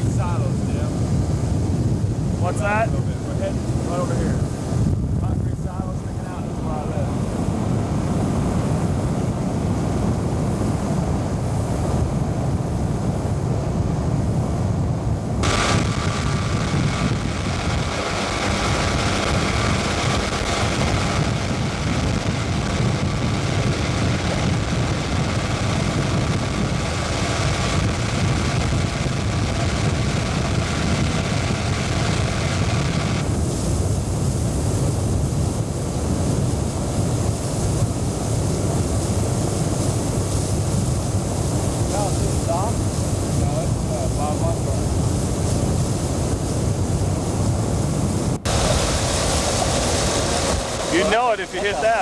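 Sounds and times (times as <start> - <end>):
wind rushing over microphone: 0.0 - 52.0
outboard motor running: 15.4 - 52.0.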